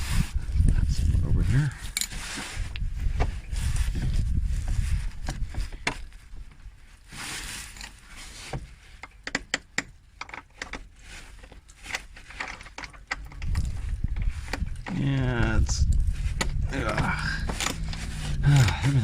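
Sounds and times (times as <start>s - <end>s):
wind rumble on microphone: 0.0s - 6.8s, 13.2s - 19.0s
tools and parts clicking and scraping: 1.8s - 3.5s, 7.4s - 15.0s, 15.8s - 19.0s.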